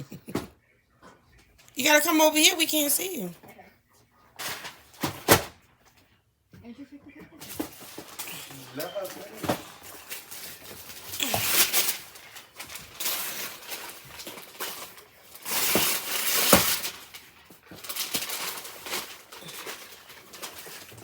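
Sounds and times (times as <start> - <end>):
wrapping paper tearing and crumpling: 4.4 - 5.4, 7.6 - 21.0.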